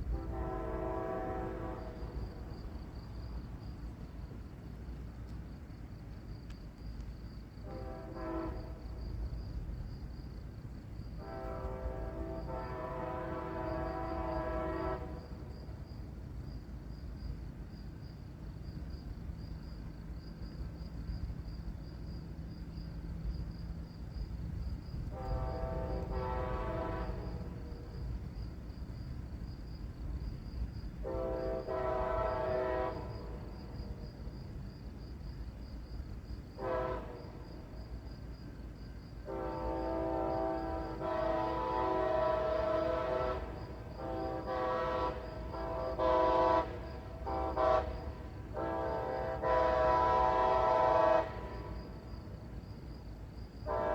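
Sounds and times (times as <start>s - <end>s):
distant train horn blasts: 0.0s - 2.9s, 7.6s - 9.2s, 11.1s - 15.8s, 24.4s - 28.4s, 30.9s - 34.1s, 36.6s - 37.8s, 39.2s - 52.4s, 53.6s - 53.9s.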